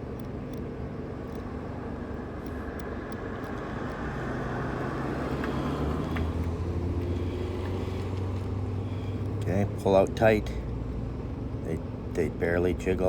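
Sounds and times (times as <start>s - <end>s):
padlock dials clicking: 0.0s - 1.7s, 2.4s - 5.0s
engine running: 0.0s - 13.0s.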